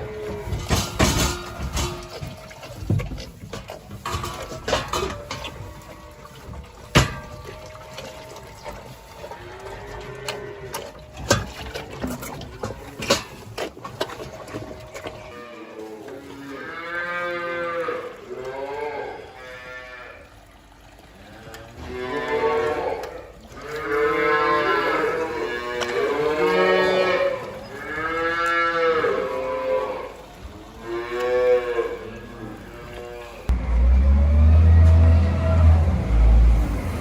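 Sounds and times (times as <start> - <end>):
sharp knocks and clatter: 0.5 - 5.7
cattle mooing: 4.1 - 11.8, 14.6 - 20.3, 21.5 - 30.2, 30.8 - 33.6.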